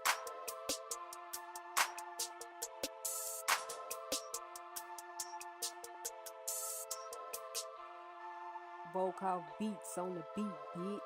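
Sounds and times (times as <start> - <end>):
loud snare hit: 3.5 - 3.8.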